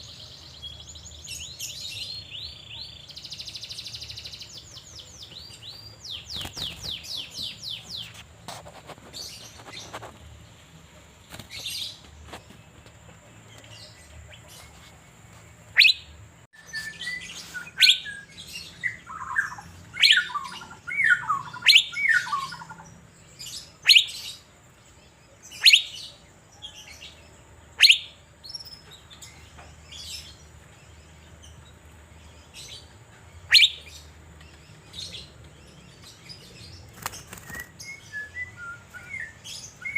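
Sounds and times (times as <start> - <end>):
bird singing whistled notes: 15.7 - 24.5, 25.5 - 26.8, 27.8 - 29.4, 33.5 - 34.1, 37.0 - 39.9.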